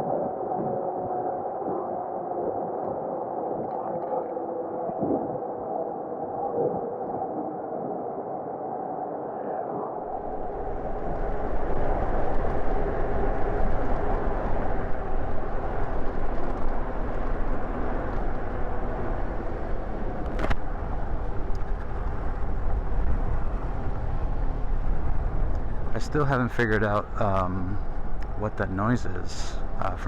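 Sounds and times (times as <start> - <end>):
wind rush on microphone: 0.0 - 30.0
street traffic noise: 10.1 - 30.0.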